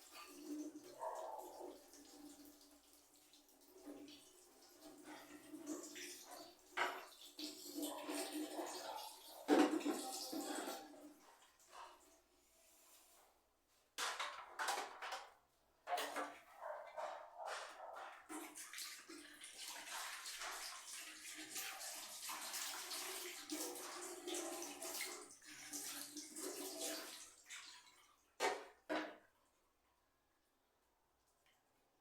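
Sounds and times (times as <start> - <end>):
tap water running and splashing: 0.0 - 12.2, 17.5 - 29.2.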